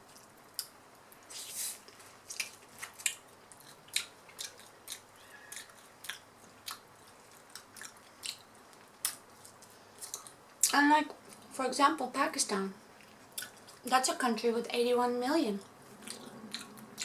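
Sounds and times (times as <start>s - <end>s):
person chewing wetly: 1.9s - 10.7s, 12.9s - 13.8s, 15.8s - 17.0s.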